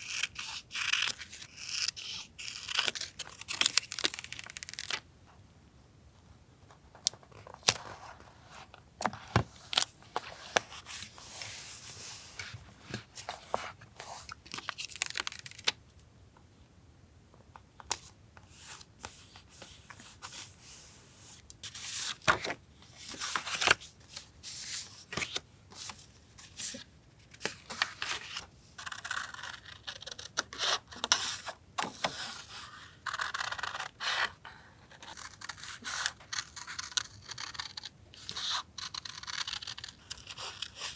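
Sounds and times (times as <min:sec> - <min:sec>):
paper rustling: 0:21.6 - 0:26.0.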